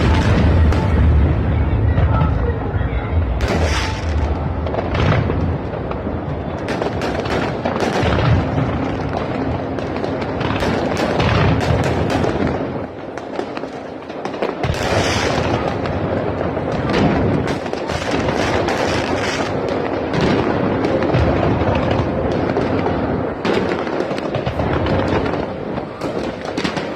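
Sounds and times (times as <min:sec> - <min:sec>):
music: 0:00.0 - 0:04.6
fireworks bangs and crackles: 0:00.0 - 0:26.9.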